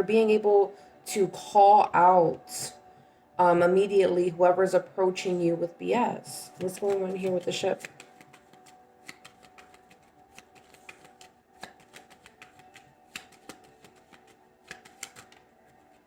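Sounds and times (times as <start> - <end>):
quiet background music: 0.0 - 16.0
cards being shuffled: 6.5 - 16.0.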